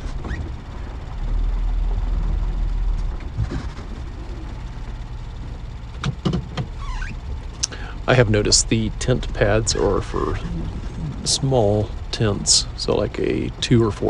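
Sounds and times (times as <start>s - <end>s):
vehicle driving on dirt road: 0.0s - 14.0s.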